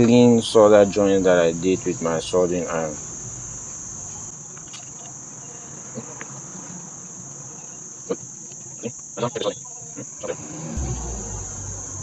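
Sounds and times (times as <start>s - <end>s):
high-pitched whine: 10.2s - 12.0s.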